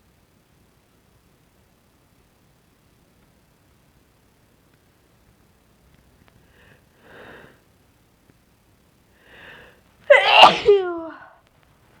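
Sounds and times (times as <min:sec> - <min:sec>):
faint breaths: 0:06.4 - 0:07.7, 0:09.1 - 0:09.9
woman sneezing: 0:10.1 - 0:11.3.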